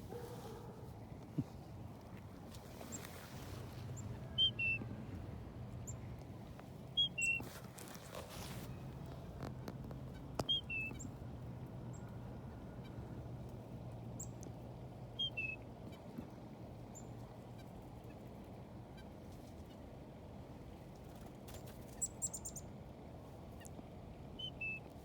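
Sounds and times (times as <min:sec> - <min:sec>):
high bird chips: 0:07.0 - 0:08.8.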